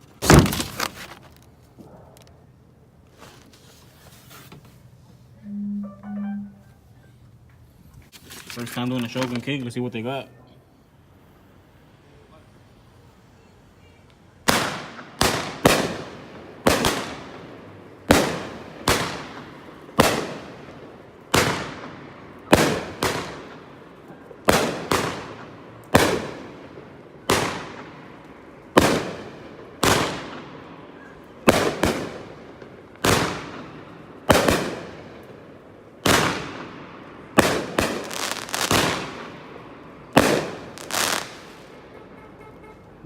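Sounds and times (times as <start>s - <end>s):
firework cake bangs: 0.2s - 1.0s, 14.4s - 20.7s, 21.3s - 23.6s, 24.4s - 26.5s, 28.8s - 35.0s, 36.0s - 39.5s.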